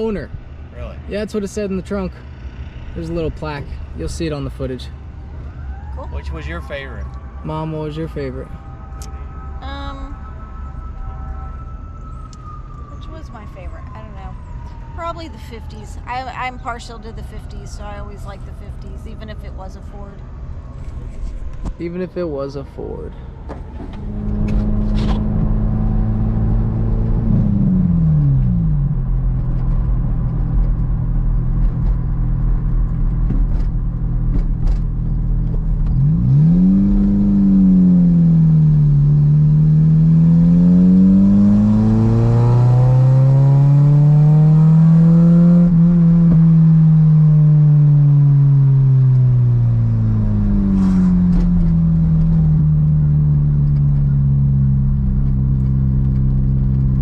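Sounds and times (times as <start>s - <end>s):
car engine running: 0.0s - 5.0s, 23.9s - 57.0s.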